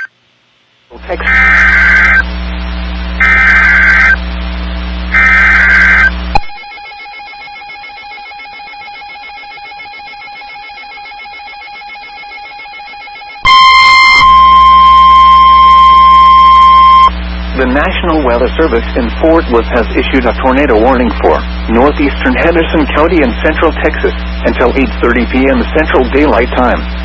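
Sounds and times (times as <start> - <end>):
faint steady hum: 0.0 - 27.0
buzzy data screeches: 1.0 - 2.3, 3.2 - 4.2, 5.1 - 6.2, 13.5 - 26.8
loud steady alarm beep: 1.2 - 2.3, 3.2 - 4.2, 5.1 - 17.2.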